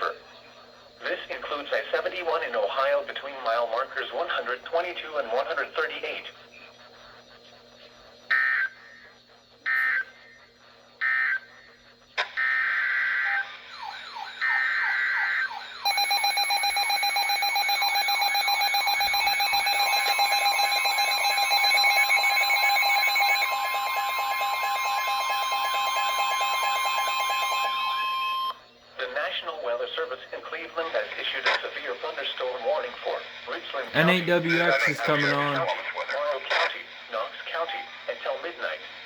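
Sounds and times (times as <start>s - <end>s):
continuous alert tone: 14.8s - 28.2s, 34.0s - 35.6s
data bursts: 15.8s - 28.0s, 34.0s - 35.6s.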